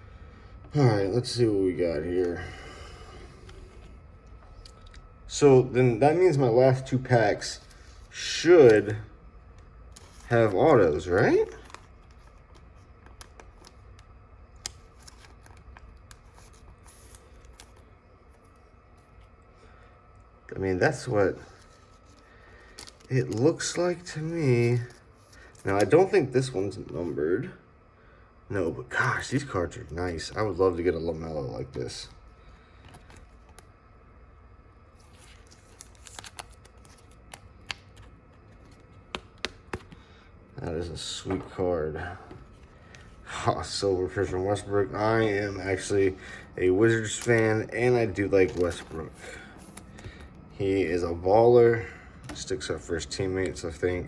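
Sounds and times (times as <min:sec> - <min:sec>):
cards rustling and sliding: 0:06.8 - 0:19.4, 0:21.0 - 0:27.2, 0:31.9 - 0:33.7, 0:34.8 - 0:40.3, 0:40.9 - 0:51.0, 0:52.2 - 0:54.0
cards being flipped: 0:09.9 - 0:18.5, 0:34.9 - 0:40.1, 0:47.0 - 0:47.6, 0:48.4 - 0:50.3
cards clicking and tapping: 0:11.1 - 0:14.0, 0:35.3 - 0:40.1.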